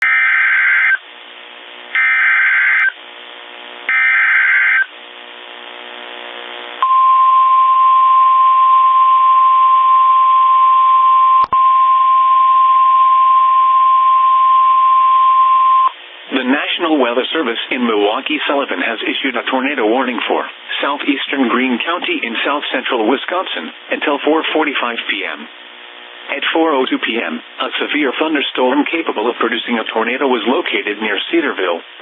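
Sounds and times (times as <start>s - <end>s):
steady high alarm tone: 0.0s - 1.0s, 2.0s - 3.0s, 3.9s - 4.9s
radio hiss: 0.1s - 6.8s, 15.9s - 32.0s
harsh digital warbling bursts: 2.0s - 3.0s, 3.9s - 4.9s.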